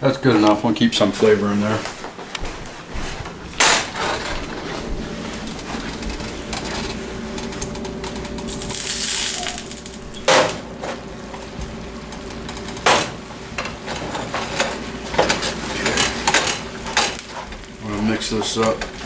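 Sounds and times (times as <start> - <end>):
cookware clanking: 3.2 - 17.7
metal utensils clinking: 12.1 - 19.0.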